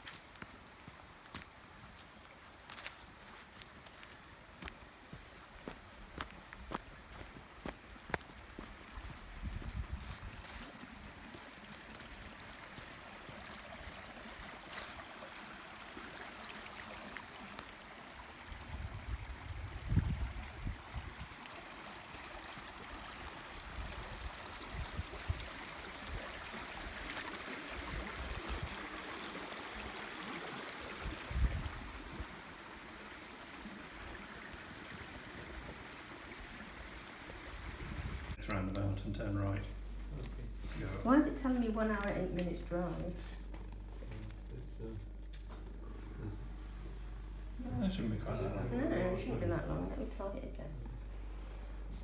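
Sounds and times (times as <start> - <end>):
stream water rushing: 0.0 - 38.4
low rumbles: 37.6 - 52.0.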